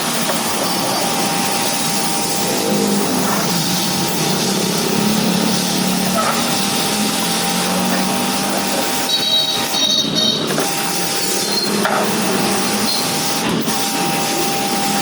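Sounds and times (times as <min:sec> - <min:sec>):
pressure washer pump humming: 0:00.0 - 0:15.0
water jet hissing: 0:00.0 - 0:15.0.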